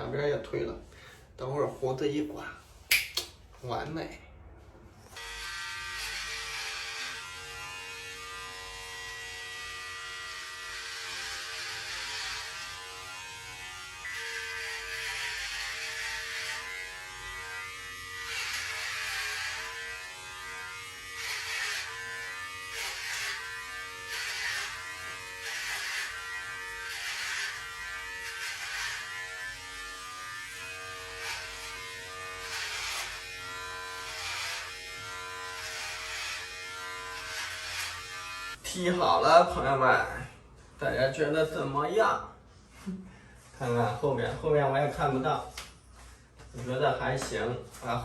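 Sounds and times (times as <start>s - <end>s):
clippers cutting hair: 5.1s - 38.6s
electric hair clippers buzzing: 5.1s - 38.6s.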